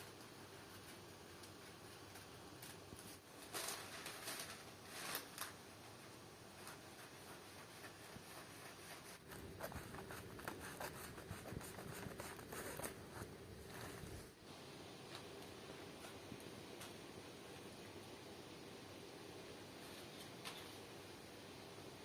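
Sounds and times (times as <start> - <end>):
cloth rustling: 0.6 - 14.4
scratchy strokes on cloth: 5.9 - 14.4.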